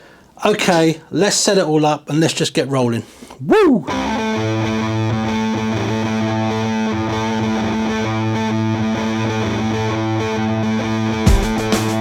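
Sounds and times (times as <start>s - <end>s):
distorted electric guitar chords: 3.9s - 12.0s
rock drums: 3.9s - 12.0s.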